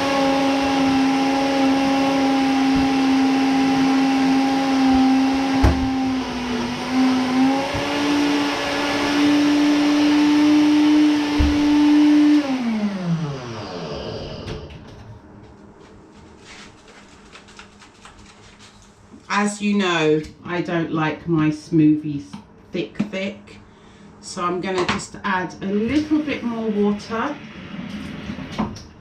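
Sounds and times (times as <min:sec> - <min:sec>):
blender motor whirring: 0:00.0 - 0:14.8.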